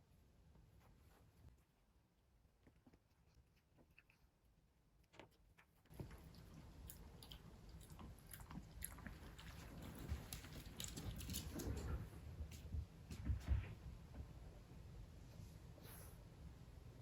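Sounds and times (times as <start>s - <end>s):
pet chewing food: 5.6s - 12.6s.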